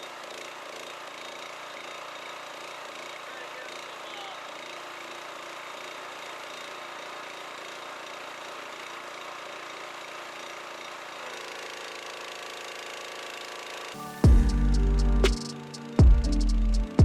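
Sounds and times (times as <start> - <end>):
pressure washer engine running: 0.0 - 16.9
loud music: 14.0 - 17.0
steady hum of tones: 14.0 - 17.0.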